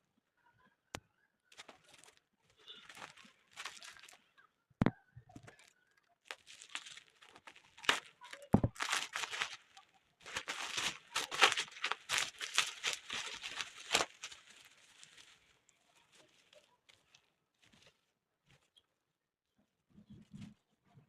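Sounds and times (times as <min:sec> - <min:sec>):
packaging rustling and crinkling: 0:01.6 - 0:04.2, 0:05.4 - 0:18.7.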